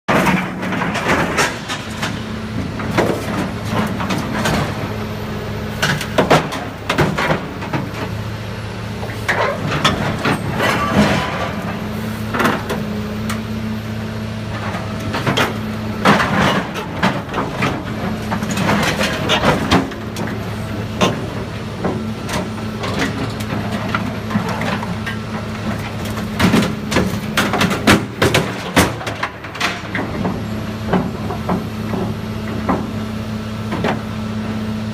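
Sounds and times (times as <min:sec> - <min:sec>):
heavy machinery engine running: 0:00.1 - 0:34.9
metal clanks and bangs: 0:09.3 - 0:12.7.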